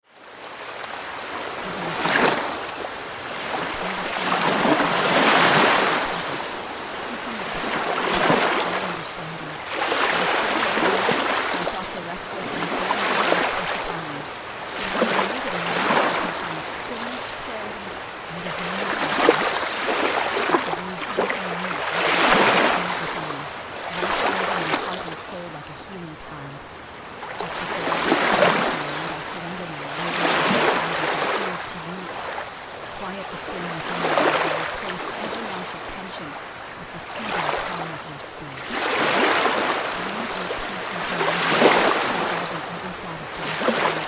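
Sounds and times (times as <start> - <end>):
ocean waves washing on shore: 0.0 - 44.0.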